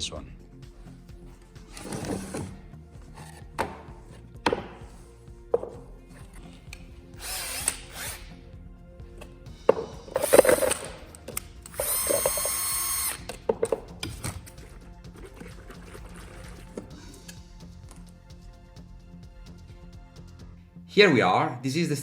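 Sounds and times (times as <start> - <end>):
background music: 0.0 - 22.0
knocks and handling rustles: 1.4 - 6.9
small electric motor whirring: 7.2 - 8.4, 11.6 - 13.4.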